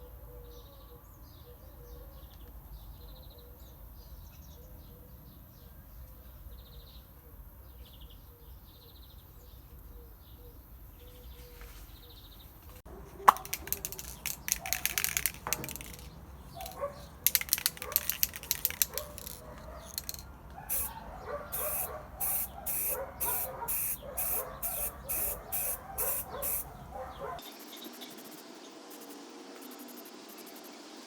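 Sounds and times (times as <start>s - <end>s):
hissing strokes on a vise: 21.6s - 26.7s.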